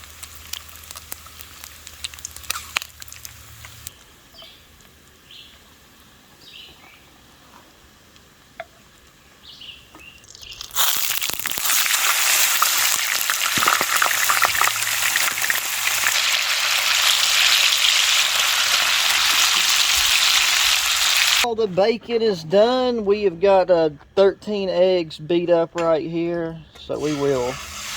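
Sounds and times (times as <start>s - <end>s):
bacon sizzling loudly: 0.0s - 3.9s, 10.2s - 21.5s, 26.9s - 27.9s.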